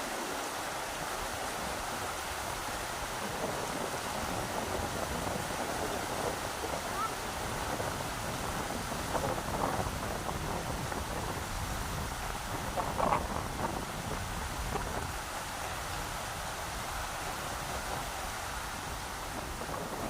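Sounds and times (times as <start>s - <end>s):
rushing river water: 0.0s - 20.0s.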